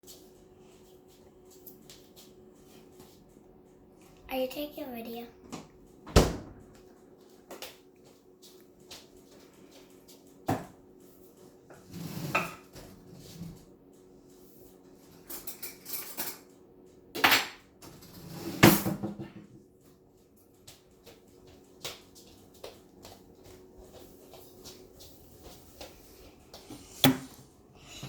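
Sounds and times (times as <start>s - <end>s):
steady low hum: 0.1s - 28.0s
dishes and cutlery clattering: 15.2s - 16.5s.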